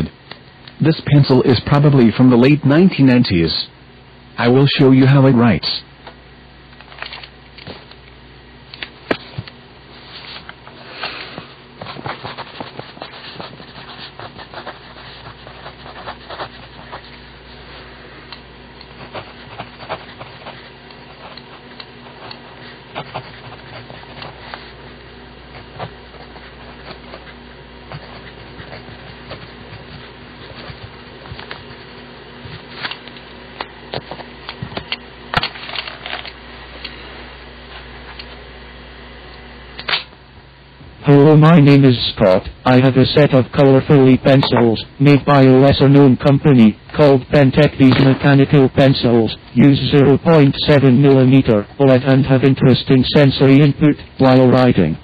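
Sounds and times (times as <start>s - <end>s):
pencil scratching on paper: 11.8s - 17.9s, 18.8s - 32.9s.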